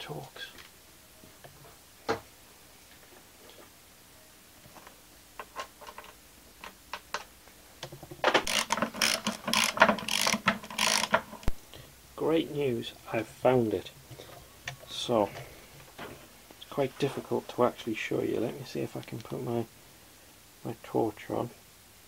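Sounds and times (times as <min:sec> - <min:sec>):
ratchet wrench clicking: 0:08.5 - 0:11.2.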